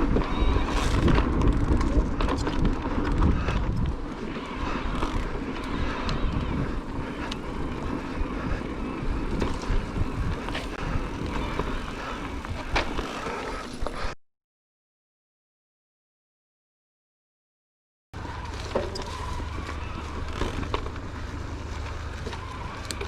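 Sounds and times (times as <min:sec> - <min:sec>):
bike clicks and knocks: 0:00.0 - 0:14.1, 0:18.2 - 0:23.0
wind on microphone: 0:00.0 - 0:14.2
tyres rumbling over dirt and stones: 0:09.1 - 0:13.7, 0:18.2 - 0:23.0.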